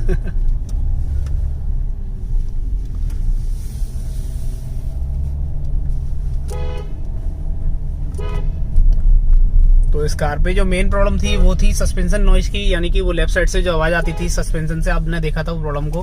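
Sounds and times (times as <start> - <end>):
car road and engine rumble: 0.0 - 16.0
car horn toots: 6.4 - 7.1, 8.1 - 8.7, 14.0 - 14.5.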